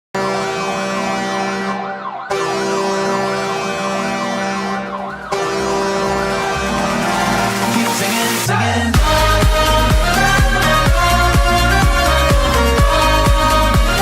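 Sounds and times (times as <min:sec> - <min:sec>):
hockey goal horn blasts: 0:00.2 - 0:07.6
siren warbling rapidly: 0:00.4 - 0:08.4, 0:09.0 - 0:14.0.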